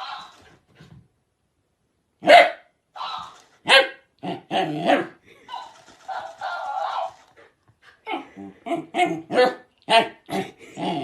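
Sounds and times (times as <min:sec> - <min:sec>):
dog barking: 0:00.0 - 0:00.4, 0:02.2 - 0:07.2.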